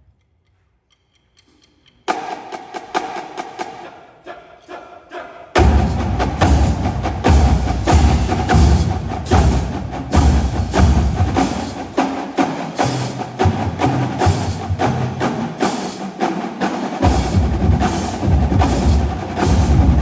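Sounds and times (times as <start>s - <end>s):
snare and tenor drums: 2.1s - 3.9s, 5.6s - 20.0s
pitched bass drums: 17.0s - 20.0s.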